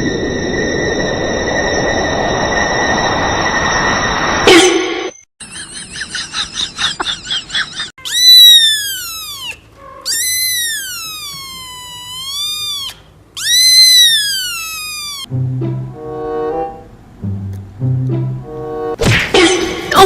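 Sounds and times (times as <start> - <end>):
animal long high calls: 8.0 - 15.3
animal squeaky cries: 8.0 - 15.3.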